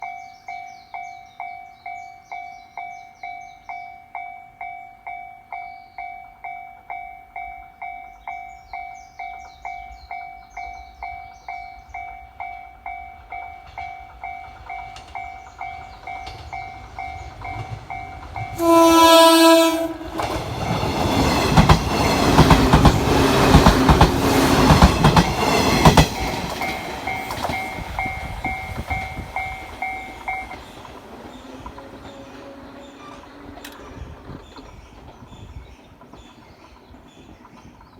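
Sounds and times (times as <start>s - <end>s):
train wheels clacking over rail joints: 13.6s - 37.9s
train horn: 18.5s - 20.8s, 31.3s - 33.6s.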